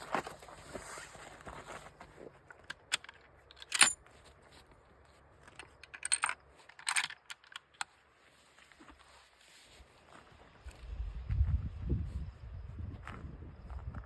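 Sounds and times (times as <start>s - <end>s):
rifle handling clicks and rattles: 2.4s - 4.2s, 5.4s - 8.0s.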